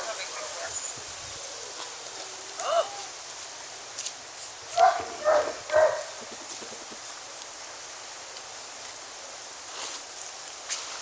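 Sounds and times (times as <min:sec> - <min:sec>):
dog barking: 0:04.7 - 0:06.1.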